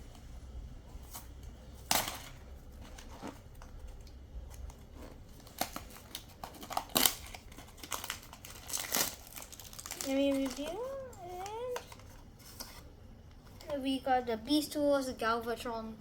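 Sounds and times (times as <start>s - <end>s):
toy packaging ripping and crinkling: 1.8s - 3.4s, 4.6s - 12.2s.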